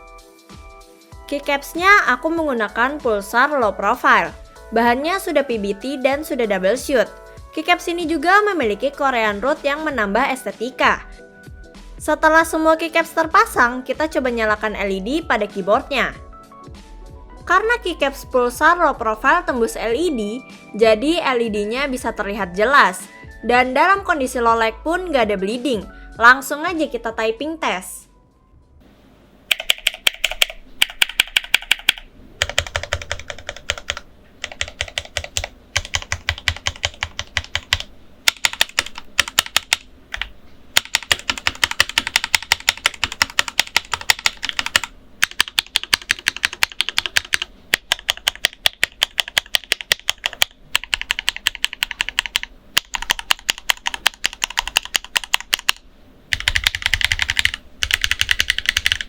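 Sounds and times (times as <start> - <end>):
mechanical keyboard typing: 29.5 - 59.0.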